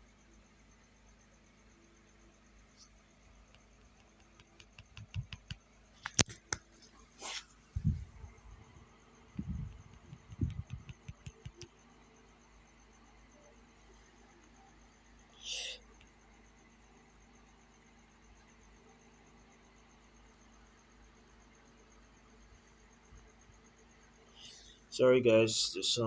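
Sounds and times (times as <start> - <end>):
faint steady hum: 0.0 - 26.0
sharp clicks: 9.7 - 11.7.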